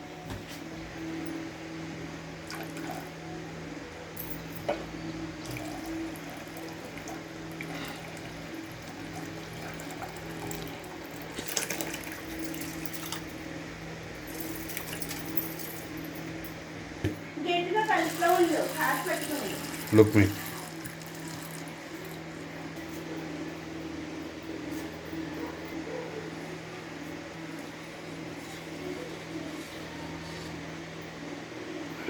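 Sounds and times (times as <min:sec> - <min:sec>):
low steady hum: 0:00.0 - 0:32.0
water running from a tap: 0:05.4 - 0:13.3, 0:17.8 - 0:22.4
utensils clinking: 0:05.4 - 0:16.6, 0:17.8 - 0:22.5.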